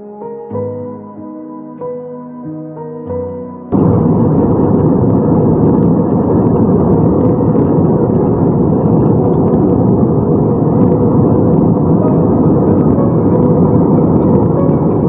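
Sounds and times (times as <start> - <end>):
soft music: 0.0 - 3.8, 10.6 - 15.0
jet engine cabin noise: 3.7 - 15.0.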